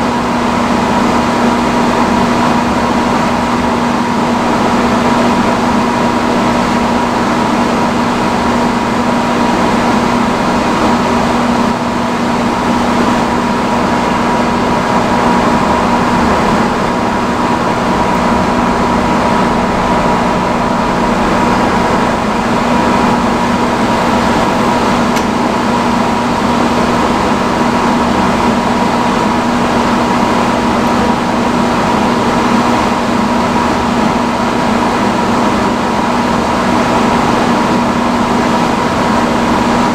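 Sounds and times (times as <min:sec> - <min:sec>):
hood hair dryer blower rushing: 0:12.5 - 0:34.4.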